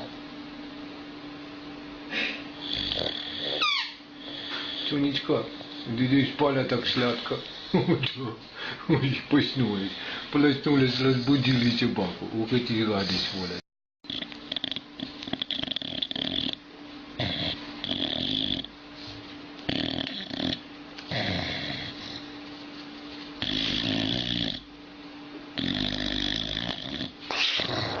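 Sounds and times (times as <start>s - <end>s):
dog snoring: 2.2s - 7.9s, 13.0s - 18.7s, 19.6s - 22.4s, 23.4s - 24.7s, 25.5s - 28.0s.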